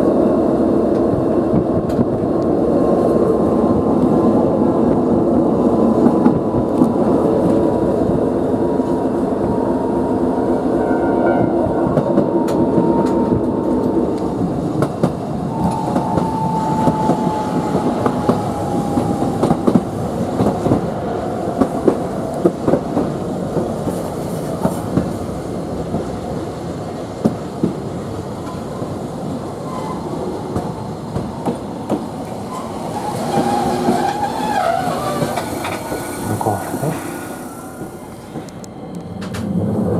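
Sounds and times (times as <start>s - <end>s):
wheels squealing: 15.4s - 22.7s, 32.3s - 38.5s
traction motor whining: 15.4s - 22.8s
wheels clicking over rail joints: 29.7s - 39.5s.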